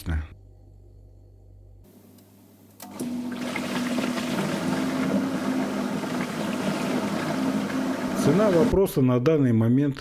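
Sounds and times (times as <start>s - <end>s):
dishwasher pump humming: 2.8s - 8.8s
water spraying and sloshing: 3.0s - 8.7s.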